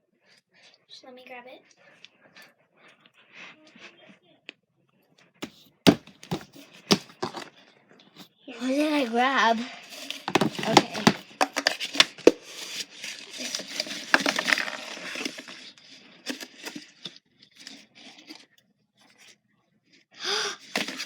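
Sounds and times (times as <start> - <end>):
hands rummaging in a box: 5.4 - 7.6, 8.7 - 18.4, 20.6 - 21.0.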